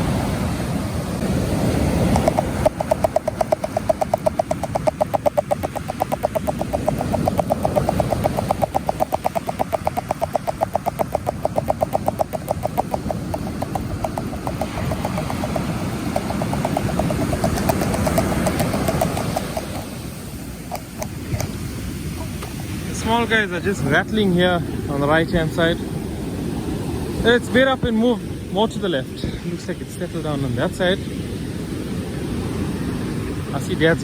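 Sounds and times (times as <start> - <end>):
wind noise: 0.0 - 34.0
fishing reel clicking: 2.0 - 20.0.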